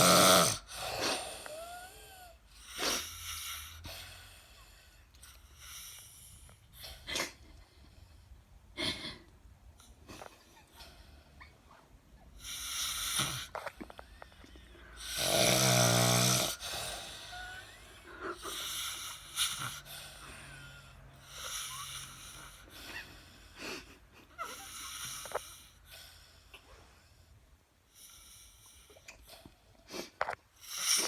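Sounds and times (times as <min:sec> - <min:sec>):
person snoring: 0:00.0 - 0:03.7, 0:15.0 - 0:22.6.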